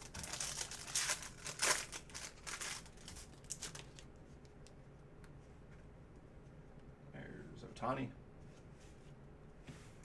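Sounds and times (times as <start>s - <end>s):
card packaging crinkling: 0.0s - 4.1s.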